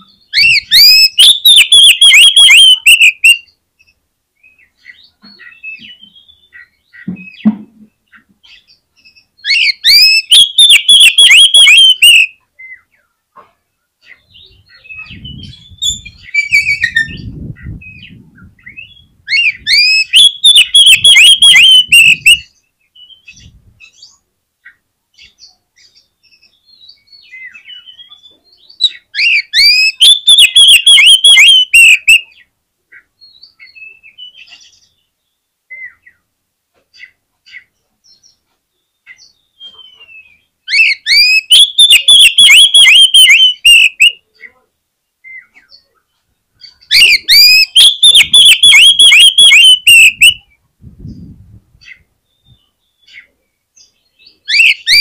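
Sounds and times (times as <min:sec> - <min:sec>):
bird singing ringing notes: 0:00.0 - 0:03.6, 0:09.4 - 0:12.3, 0:18.8 - 0:22.6, 0:29.3 - 0:32.2, 0:40.7 - 0:44.1, 0:46.9 - 0:50.4.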